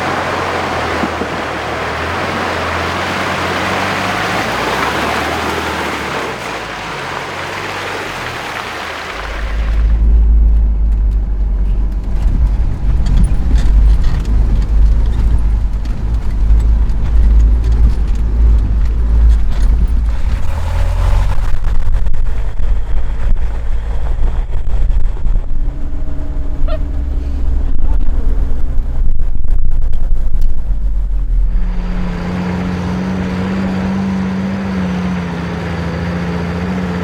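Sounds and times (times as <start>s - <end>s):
off-road vehicle rumble: 0.0s - 37.0s
knocks and rattles: 9.3s - 26.9s.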